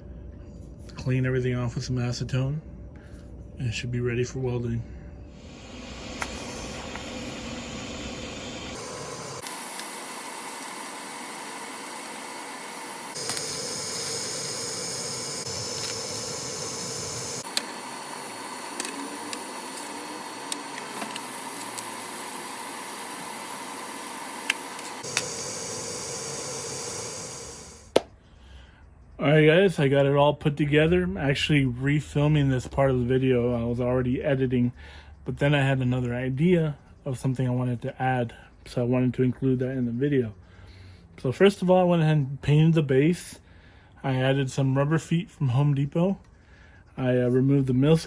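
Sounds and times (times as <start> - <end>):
welding arc hissing and crackling: 5.3 - 28.0.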